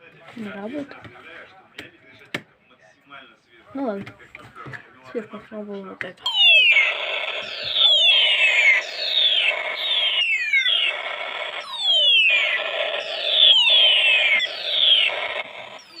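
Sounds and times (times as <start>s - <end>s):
harsh buzzing noise: 6.3s - 16.0s
shrill siren sweeping downward: 6.3s - 16.0s.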